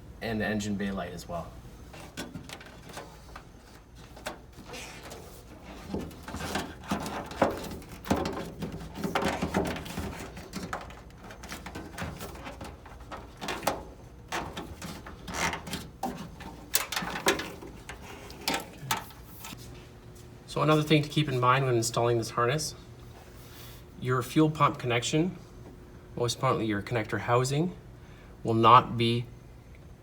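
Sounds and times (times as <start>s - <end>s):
hands handling wiring harness: 1.9s - 19.6s.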